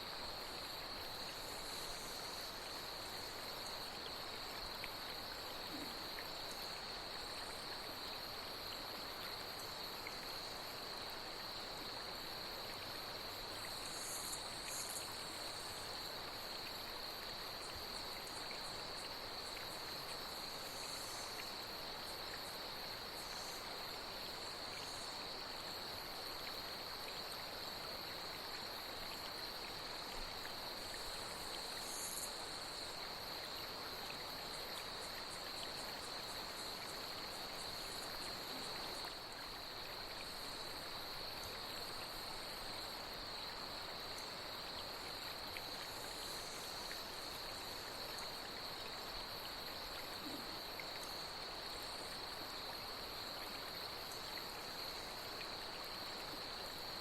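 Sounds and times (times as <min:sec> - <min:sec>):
cicadas chorus: 0:00.0 - 0:57.0.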